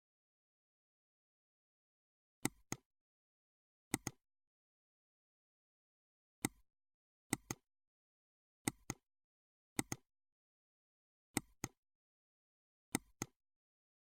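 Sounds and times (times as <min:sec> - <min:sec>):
computer mouse clicking: 0:02.4 - 0:02.8, 0:03.9 - 0:04.2, 0:07.3 - 0:07.6, 0:08.7 - 0:09.0, 0:09.8 - 0:10.0, 0:11.4 - 0:11.8, 0:12.9 - 0:13.4.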